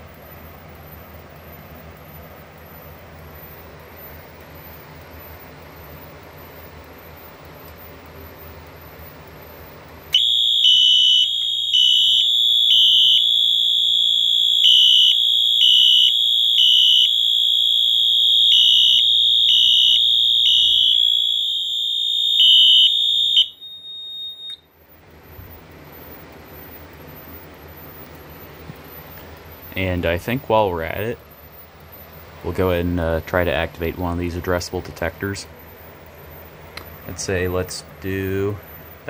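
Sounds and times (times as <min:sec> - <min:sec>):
fire alarm horns: 0:10.1 - 0:24.7.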